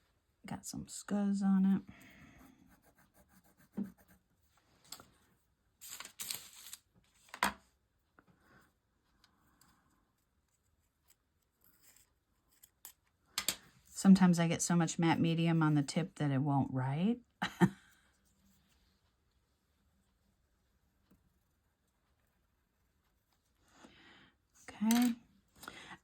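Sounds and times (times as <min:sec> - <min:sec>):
pencil scratching on paper: 0:02.4 - 0:04.5.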